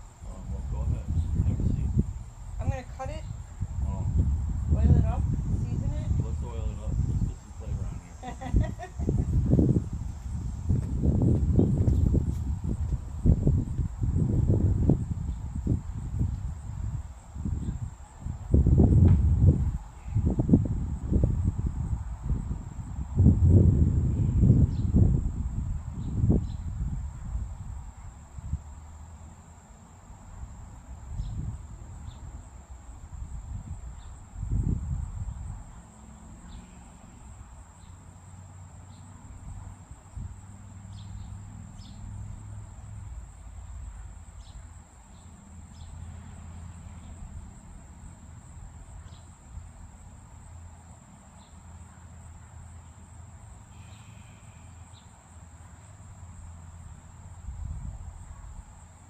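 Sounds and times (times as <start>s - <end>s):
low rumbles: 0.0s - 26.8s
insects trilling: 0.0s - 59.0s.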